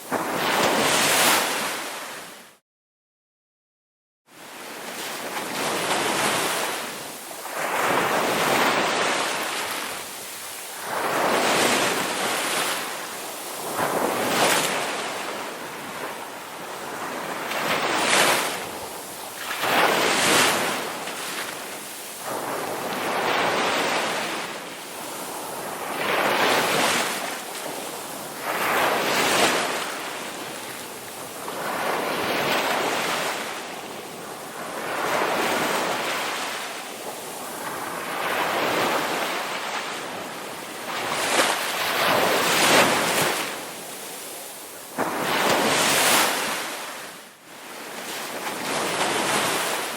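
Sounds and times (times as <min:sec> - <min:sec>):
ocean waves crashing: 0:00.0 - 0:02.4, 0:34.4 - 0:47.2.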